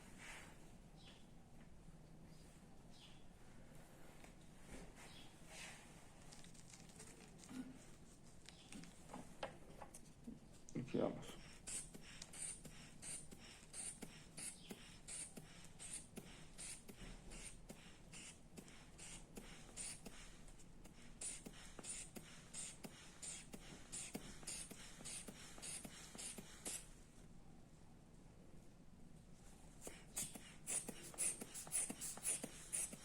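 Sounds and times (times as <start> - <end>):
hand bulb puffing air: 11.4 - 26.9, 29.8 - 33.0.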